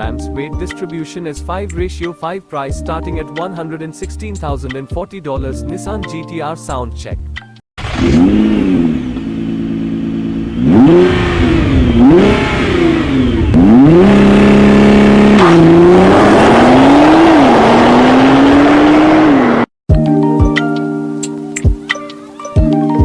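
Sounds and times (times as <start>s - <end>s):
car exhaust revving: 7.8s - 19.7s
light chiming music: 20.0s - 23.0s.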